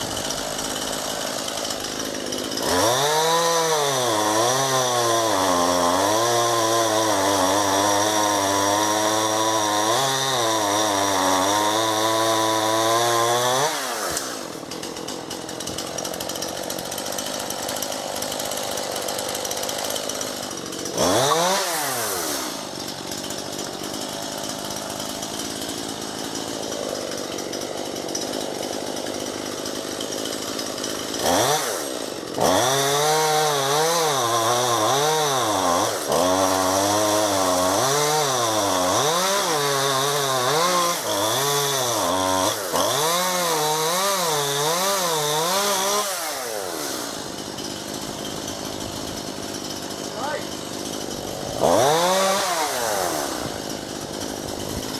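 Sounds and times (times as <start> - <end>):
chainsaw cutting a branch: 0.0 - 54.9.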